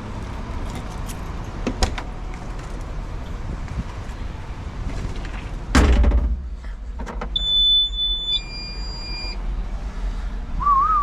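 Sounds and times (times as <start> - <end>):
thump: 5.7 - 7.3.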